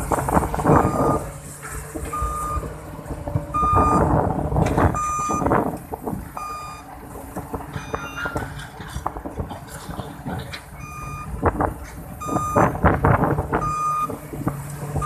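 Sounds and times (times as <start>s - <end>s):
diesel engine running: 0.0s - 15.0s
excavator travel alarm beeping: 0.7s - 1.3s, 2.1s - 2.8s, 3.5s - 4.1s, 4.8s - 5.6s, 6.3s - 7.0s, 7.7s - 8.6s, 10.8s - 11.4s, 12.2s - 12.8s, 13.6s - 14.2s.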